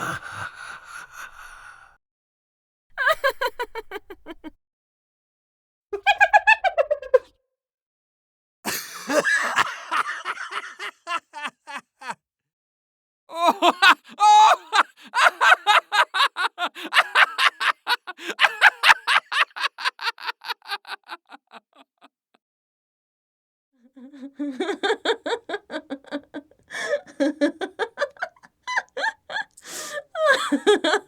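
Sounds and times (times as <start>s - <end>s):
rhythmic ha-ha-ha laugh: 3.0s - 4.6s, 8.7s - 12.2s, 13.5s - 22.4s, 24.1s - 31.0s.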